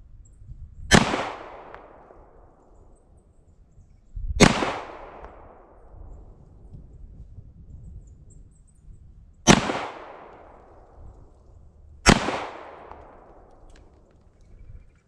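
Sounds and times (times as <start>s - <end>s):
pistol shots echoing: 0.9s - 2.6s, 4.4s - 5.9s, 9.5s - 11.0s, 12.0s - 14.0s.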